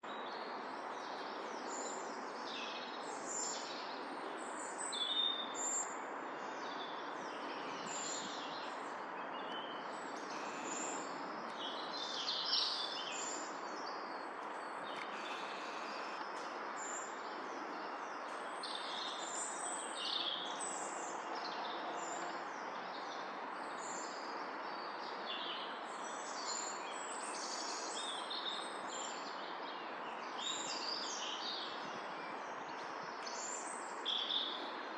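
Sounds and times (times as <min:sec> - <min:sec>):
songbirds singing: 0:00.0 - 0:34.9.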